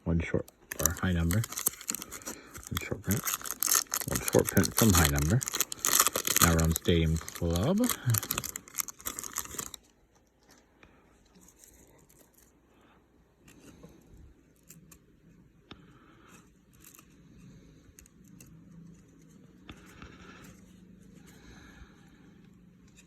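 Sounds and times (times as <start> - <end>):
cards rustling and clicking: 0.4 - 12.6, 16.3 - 21.5
foil wrapper tearing: 0.7 - 9.8.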